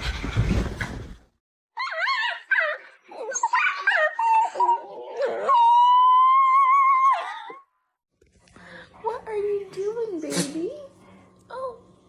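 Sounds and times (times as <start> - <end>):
dog whining and yowling: 1.8 - 7.6.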